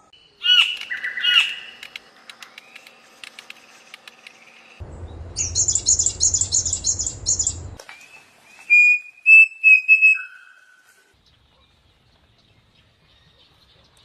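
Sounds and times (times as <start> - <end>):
whistled bird notes: 5.0 - 10.8.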